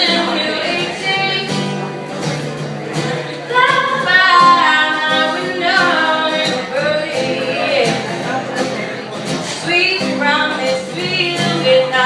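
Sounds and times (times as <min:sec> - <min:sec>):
women singing in harmony: 0:03.5 - 0:08.0.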